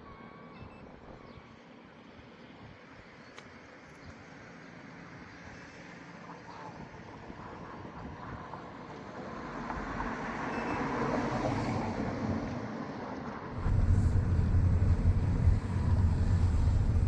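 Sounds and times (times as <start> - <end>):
vehicle passing by: 13.5 - 17.0
low rumble: 13.6 - 17.0.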